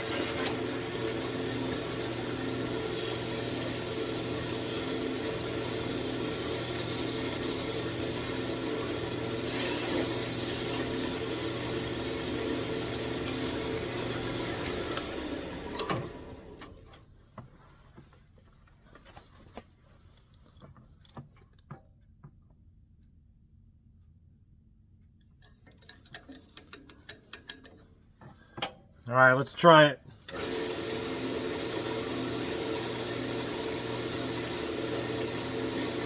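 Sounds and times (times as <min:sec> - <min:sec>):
lathe spinning down: 0:00.0 - 0:16.6, 0:30.3 - 0:36.0
wood lathe motor hum: 0:00.0 - 0:16.7, 0:30.3 - 0:36.0.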